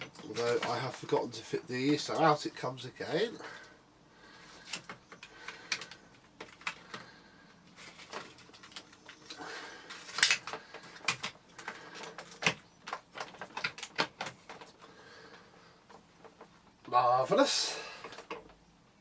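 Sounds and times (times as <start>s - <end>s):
hard plastic parts clicking and knocking: 0.0s - 1.2s, 4.6s - 7.2s, 7.9s - 14.9s.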